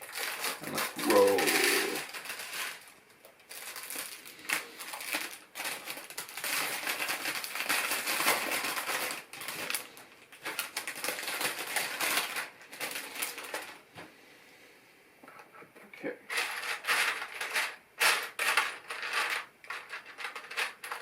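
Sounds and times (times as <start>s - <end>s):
plastic bag crinkling: 0.0s - 13.8s
plastic pieces clicking and rattling: 0.0s - 13.8s, 16.3s - 21.0s.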